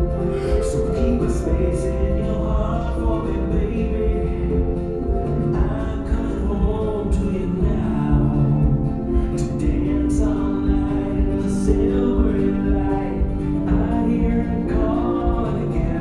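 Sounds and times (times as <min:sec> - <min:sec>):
choir-like singing: 0:00.0 - 0:16.0.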